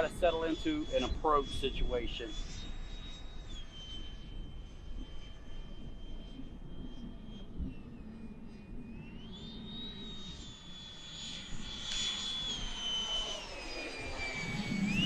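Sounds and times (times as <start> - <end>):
wind rumble on microphone: 0.0 - 10.5
model jet ducted fan whining: 0.0 - 15.0.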